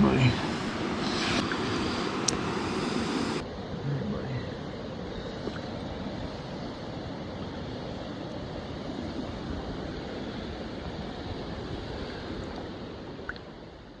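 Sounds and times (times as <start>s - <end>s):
creek water flowing: 0.0s - 4.6s.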